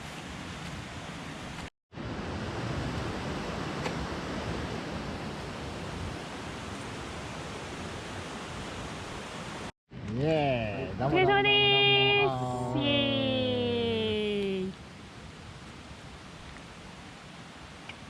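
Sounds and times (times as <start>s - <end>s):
mountain stream rushing: 0.0s - 9.7s, 14.8s - 18.0s.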